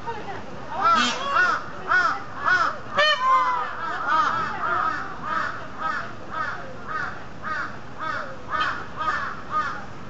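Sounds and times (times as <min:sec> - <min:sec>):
peafowl calling: 0:00.8 - 0:06.0.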